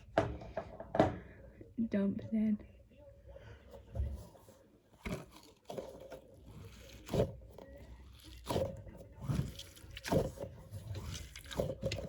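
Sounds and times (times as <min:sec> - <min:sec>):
squishy toy wet squelches: 0:08.0 - 0:12.0.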